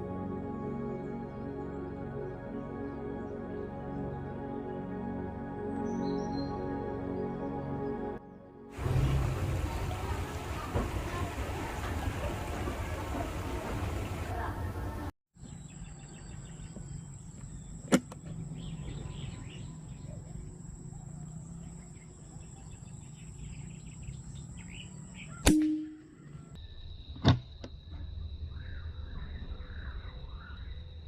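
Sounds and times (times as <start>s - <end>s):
outdoor background noise: 8.7s - 31.0s.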